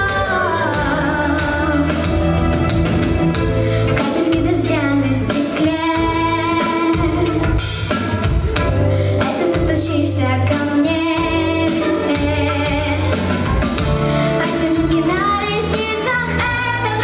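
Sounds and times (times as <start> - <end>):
girl singing: 0.0 - 2.1, 4.0 - 7.6, 9.2 - 13.2, 14.4 - 17.0
instrumental accompaniment with drums: 0.0 - 17.0.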